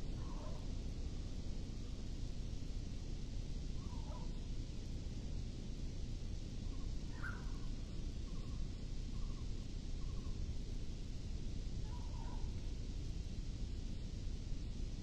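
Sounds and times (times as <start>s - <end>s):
faint short bird calls: 7.1s - 7.7s.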